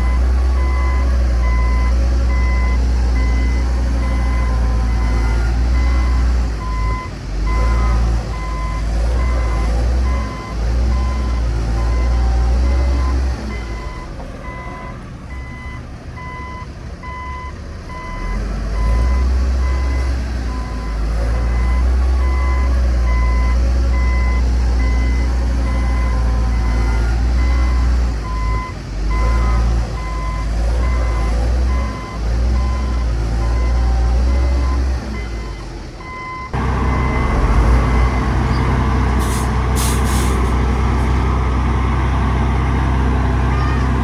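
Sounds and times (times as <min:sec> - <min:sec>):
diesel engine running hard: 0:00.0 - 0:44.0
back-up alarm beeping: 0:18.8 - 0:38.9.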